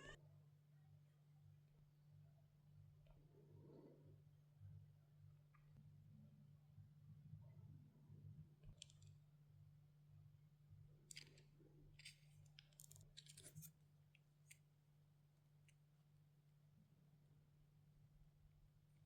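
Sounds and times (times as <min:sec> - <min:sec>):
light scrapes: 0:12.0 - 0:13.8.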